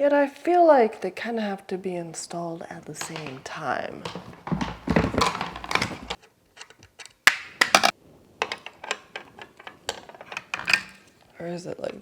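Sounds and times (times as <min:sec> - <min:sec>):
small parts clicking and tapping: 0:03.0 - 0:11.2.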